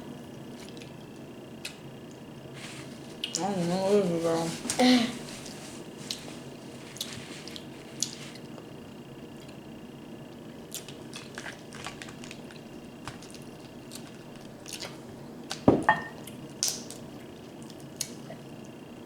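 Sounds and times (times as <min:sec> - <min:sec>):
wet squishing of eating seafood: 0:00.3 - 0:03.4, 0:05.4 - 0:09.8, 0:10.5 - 0:18.8.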